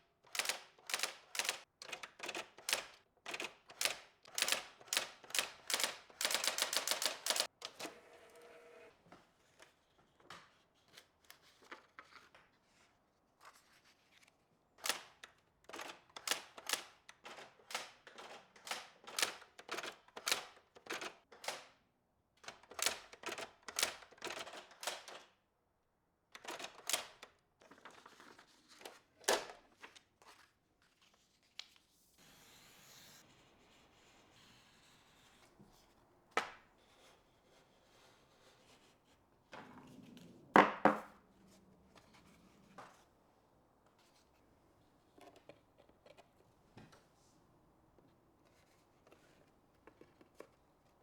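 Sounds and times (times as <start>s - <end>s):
typewriter keys clacking: 0.3s - 7.5s.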